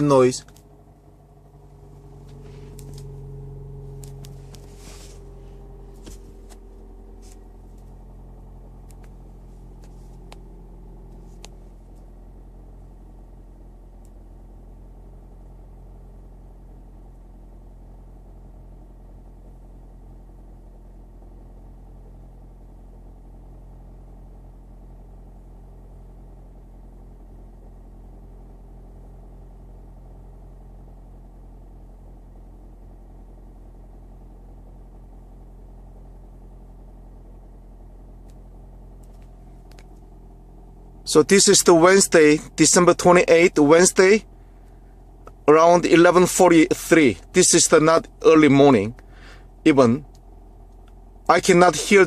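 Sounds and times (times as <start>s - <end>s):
engine whining tone: 0.0s - 15.7s, 38.2s - 52.0s
car engine humming: 0.0s - 52.0s.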